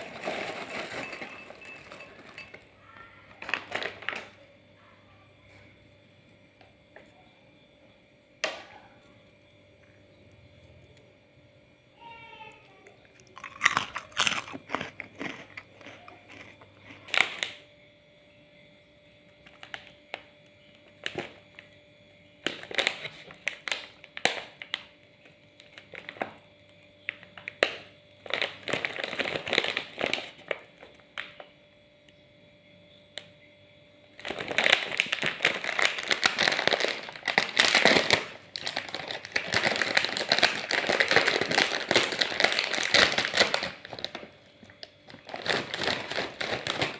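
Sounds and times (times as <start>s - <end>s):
plastic snack packets crinkling: 0.0s - 4.4s, 13.1s - 17.6s, 19.4s - 21.7s, 22.4s - 31.5s, 34.1s - 46.9s.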